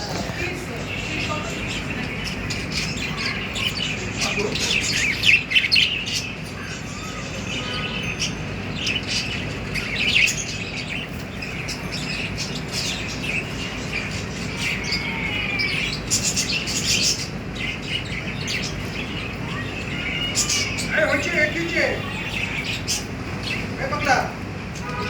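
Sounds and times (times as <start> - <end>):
birds chirping: 0.0 - 25.0.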